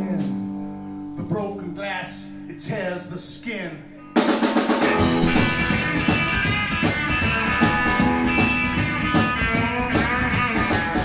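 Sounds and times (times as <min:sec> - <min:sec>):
live rock band playing: 0:04.0 - 0:11.0.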